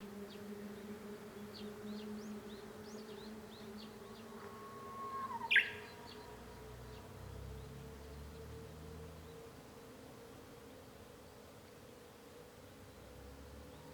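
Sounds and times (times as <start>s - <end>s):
warbler singing: 5.0s - 7.0s.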